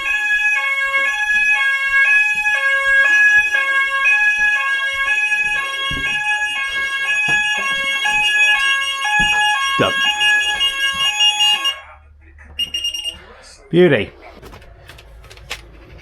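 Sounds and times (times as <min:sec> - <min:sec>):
fire alarm two-tone warble: 0:00.0 - 0:12.0, 0:12.6 - 0:13.3
knocks: 0:02.3 - 0:11.6.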